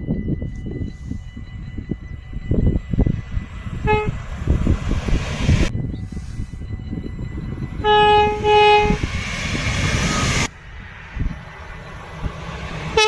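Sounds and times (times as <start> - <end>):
rumble of passing train: 0.0 - 13.0
train horn blasts: 3.8 - 4.2, 7.8 - 9.3.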